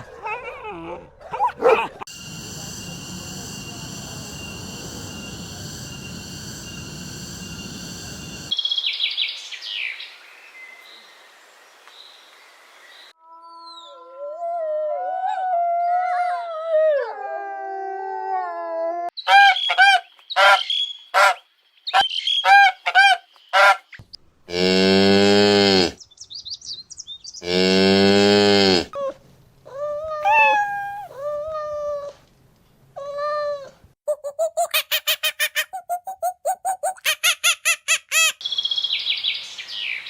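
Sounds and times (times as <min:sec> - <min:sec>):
animal calls: 0:29.8 - 0:31.3.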